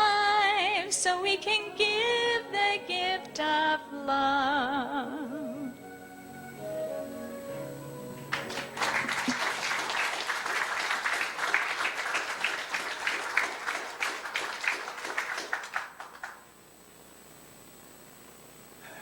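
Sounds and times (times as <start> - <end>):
congregation applauding: 8.3 - 16.5.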